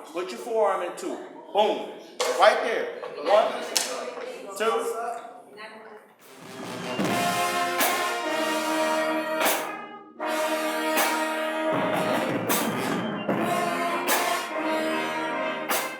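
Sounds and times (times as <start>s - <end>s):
brass sustained chords: 6.2s - 15.9s
sharp drum hits: 6.3s - 8.8s, 9.4s - 9.8s, 11.0s - 14.5s, 15.7s - 15.9s.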